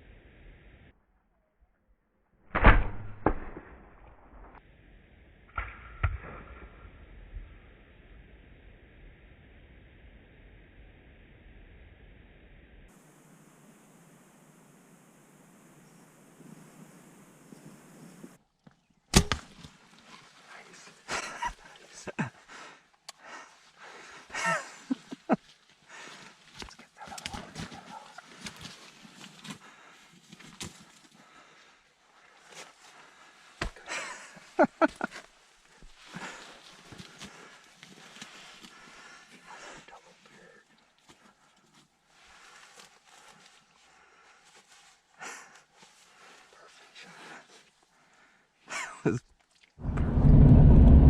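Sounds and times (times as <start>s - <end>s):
arrow striking target: 2.5s - 4.6s, 5.5s - 6.8s, 19.1s - 19.6s.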